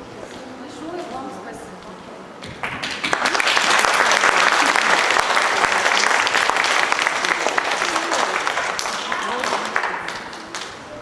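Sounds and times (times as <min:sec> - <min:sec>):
audience applauding: 0:02.4 - 0:11.0.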